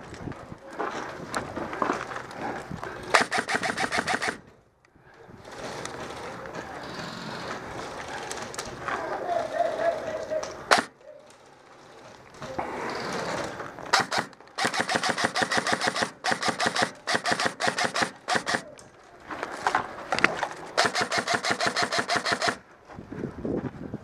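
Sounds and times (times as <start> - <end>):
airsoft rifle rapid clicking shots: 3.1 - 4.5, 10.7 - 11.0, 13.9 - 18.8, 20.8 - 22.6.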